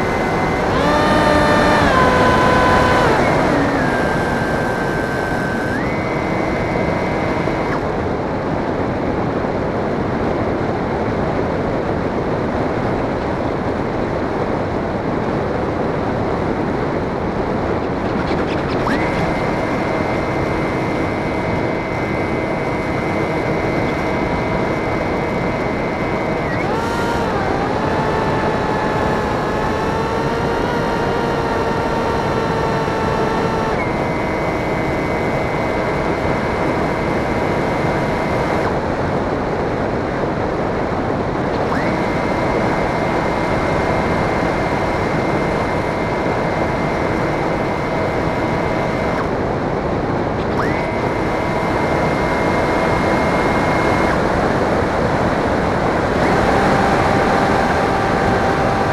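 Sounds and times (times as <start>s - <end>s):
model plane motor whine: 0.0s - 8.2s, 17.8s - 39.6s, 41.2s - 49.5s, 50.4s - 58.9s.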